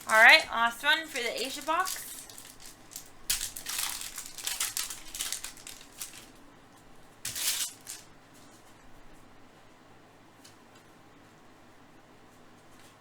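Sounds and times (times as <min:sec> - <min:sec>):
wrapper being torn and crinkled: 0:01.1 - 0:06.4, 0:07.2 - 0:08.1.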